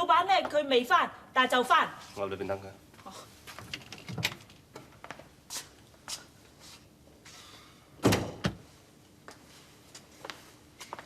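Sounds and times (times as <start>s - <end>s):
door shutting with heavy thud: 8.0s - 8.6s.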